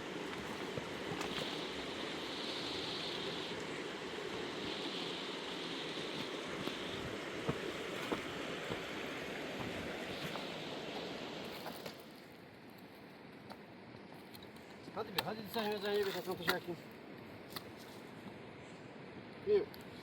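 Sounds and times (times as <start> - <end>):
river rushing: 0.0 - 12.1.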